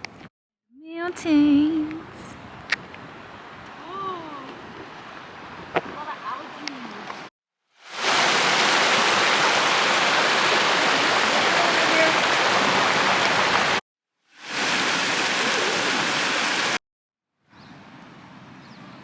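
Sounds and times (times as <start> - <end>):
waterfall roaring: 1.1 - 7.3, 7.9 - 13.8, 14.5 - 16.8.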